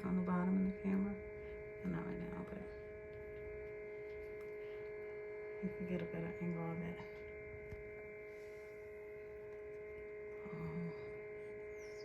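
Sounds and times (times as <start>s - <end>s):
electrical hum: 0.0s - 12.0s
low murmured voice: 10.3s - 11.4s.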